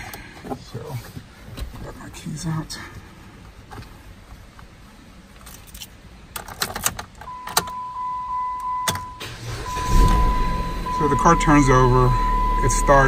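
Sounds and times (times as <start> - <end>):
car engine cranking: 5.4 - 7.8, 8.6 - 13.0
car keys jangling: 5.4 - 7.8, 8.6 - 9.2
high electronic warning tone: 7.3 - 13.0.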